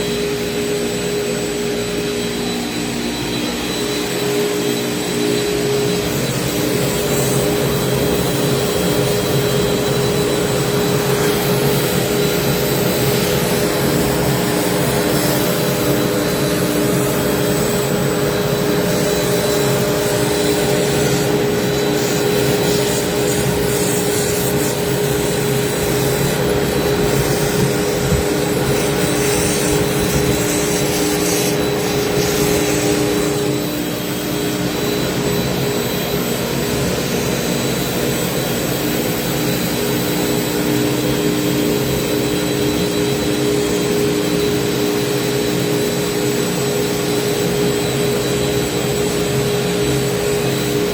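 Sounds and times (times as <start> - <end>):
router cutting noise: 0.0 - 35.6
cnc router spindle whine: 0.0 - 50.9.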